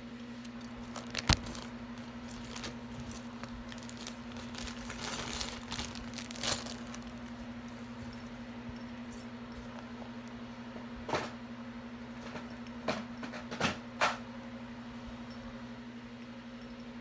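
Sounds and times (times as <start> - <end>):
steady low hum: 0.0 - 13.3
jewelry clinking: 0.6 - 9.8.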